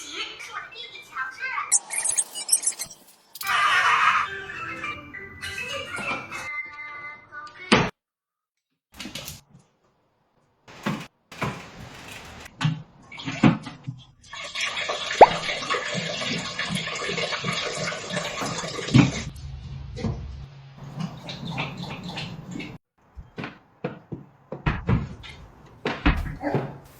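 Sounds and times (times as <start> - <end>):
water splashing: 13.1 - 19.3, 20.8 - 22.8.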